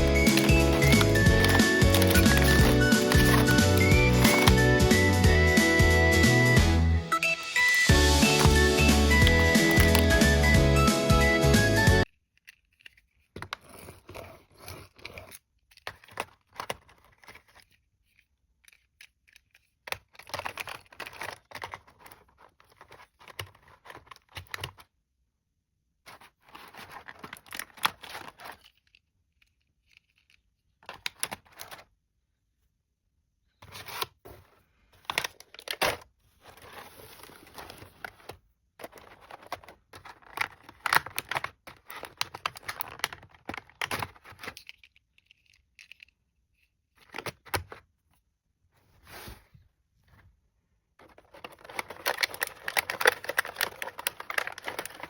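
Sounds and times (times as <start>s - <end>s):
packaging tearing and crinkling: 0.0s - 4.8s, 7.2s - 10.2s, 38.9s - 44.7s, 51.1s - 55.0s.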